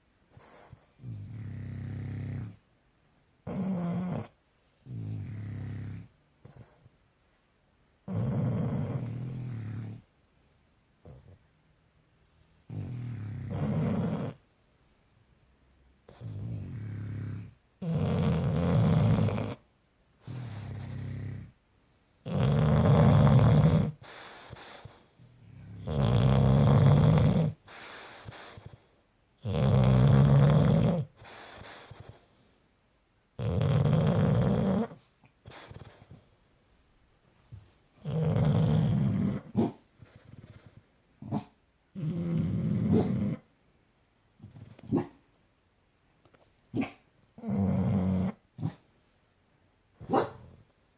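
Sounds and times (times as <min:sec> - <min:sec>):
dog snorting breaths: 0:00.3 - 0:02.6, 0:20.2 - 0:21.5, 0:22.3 - 0:29.0, 0:30.5 - 0:32.6, 0:33.6 - 0:36.4, 0:38.0 - 0:43.4
dog snoring: 0:00.4 - 0:02.6, 0:03.4 - 0:06.9, 0:08.0 - 0:10.1, 0:11.0 - 0:11.4, 0:12.7 - 0:14.4, 0:16.1 - 0:21.6, 0:22.2 - 0:32.3, 0:33.4 - 0:36.2, 0:38.0 - 0:43.4, 0:46.8 - 0:48.8.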